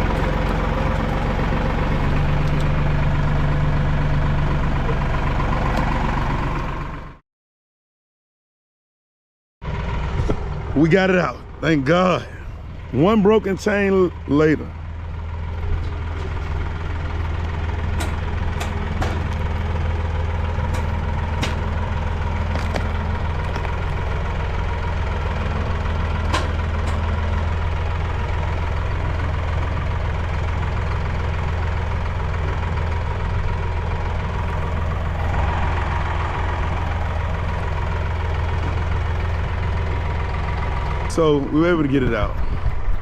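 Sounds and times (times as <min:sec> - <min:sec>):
tractor engine running: 0:00.0 - 0:07.2, 0:09.6 - 0:43.0
sharp clicks and knocks: 0:17.9 - 0:19.6, 0:20.7 - 0:21.7.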